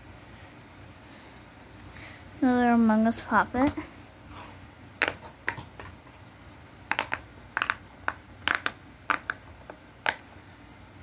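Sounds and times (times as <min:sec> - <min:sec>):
fidget toy bubbles popping: 0:06.9 - 0:10.2.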